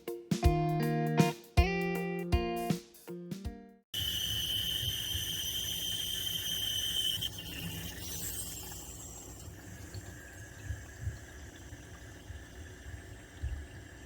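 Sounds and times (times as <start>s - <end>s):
guitar tune: 0.0s - 3.8s
thin high whine: 4.0s - 11.2s.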